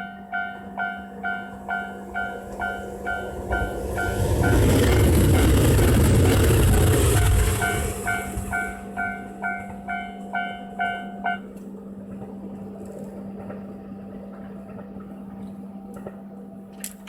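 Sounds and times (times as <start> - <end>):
level crossing warning bell: 0.0 - 4.8, 7.6 - 11.6.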